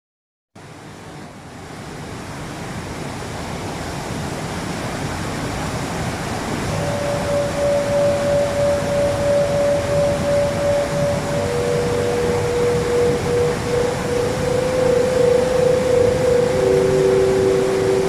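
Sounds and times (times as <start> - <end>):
waterfall rushing: 2.4 - 18.0
pure steady wavering tone: 6.6 - 18.0.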